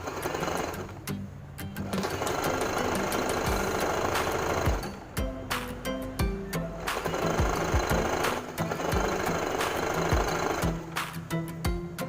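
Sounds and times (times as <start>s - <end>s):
sewing machine rattling: 0.0s - 1.0s, 1.9s - 5.1s, 6.9s - 10.9s
background music: 0.0s - 12.0s.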